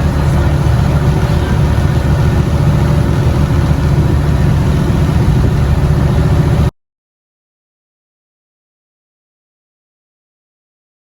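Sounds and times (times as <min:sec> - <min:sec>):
boat engine running: 0:00.0 - 0:06.7.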